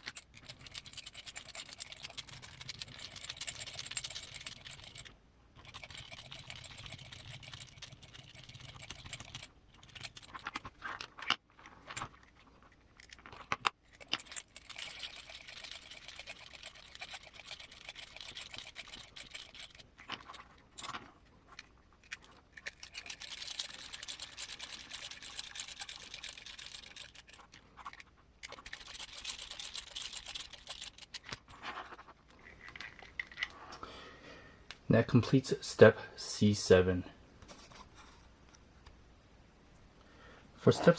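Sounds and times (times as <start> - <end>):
fine rapid screw clicking: 0.0 - 10.5, 13.4 - 20.5, 22.5 - 31.4
plastic parts clicking and knocking: 0.0 - 33.6.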